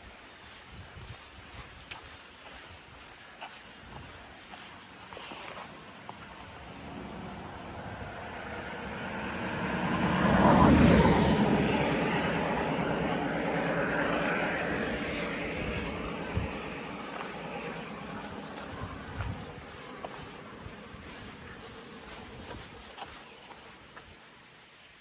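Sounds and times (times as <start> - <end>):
vehicle passing by: 6.3 - 23.7.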